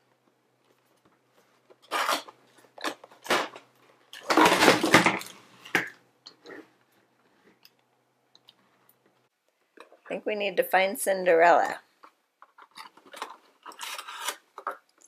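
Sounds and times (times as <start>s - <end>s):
packaging crinkling and rustling: 12.4s - 14.9s.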